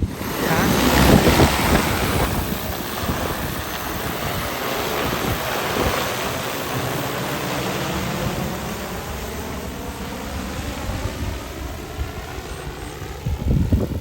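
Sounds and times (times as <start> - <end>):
wind noise on microphone: 0.0 - 6.8, 10.3 - 14.0
drone rotors whirring: 0.0 - 14.0.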